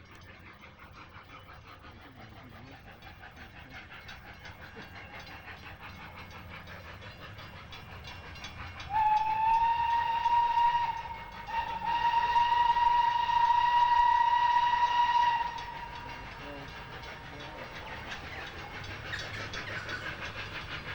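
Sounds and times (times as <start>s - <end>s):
steam locomotive exhaust beats: 0.0s - 20.9s
loud steam whistle: 8.9s - 17.2s.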